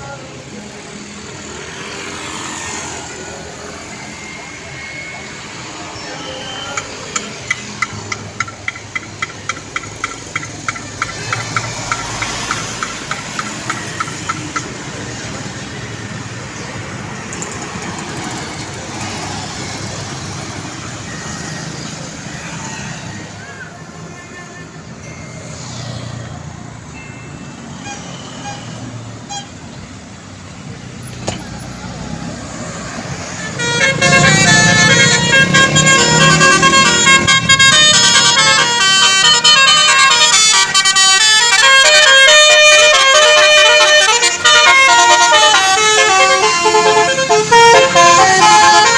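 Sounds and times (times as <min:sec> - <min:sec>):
musical bus horn melody: 0:27.5 - 0:29.8, 0:33.0 - 0:48.9.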